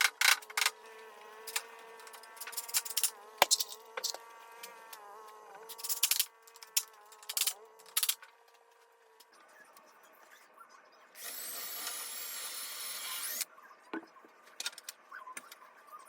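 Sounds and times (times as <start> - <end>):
small motor buzzing hum: 0.3 - 10.4, 11.2 - 13.5.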